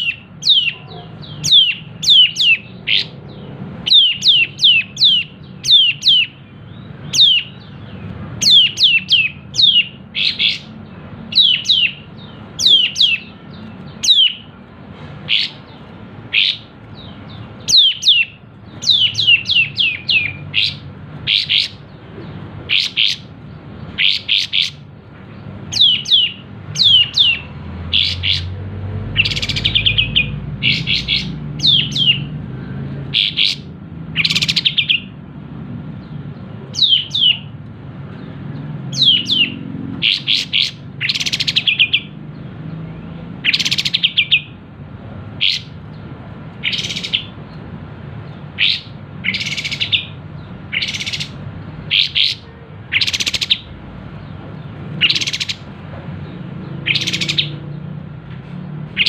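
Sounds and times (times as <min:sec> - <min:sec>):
bird singing in bursts: 0:00.0 - 0:58.2.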